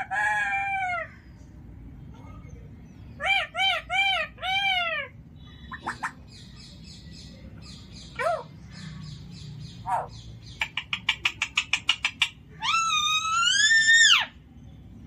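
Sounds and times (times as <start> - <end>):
parrot chirps and calls: 0.0 - 1.7, 2.8 - 14.9
rapid clicking chirps: 10.4 - 12.4.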